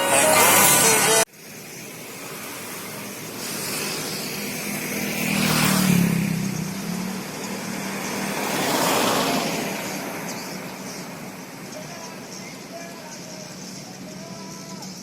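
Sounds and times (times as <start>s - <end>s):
vehicle approaching: 0.0s - 12.7s
vehicle passing by: 2.2s - 11.9s.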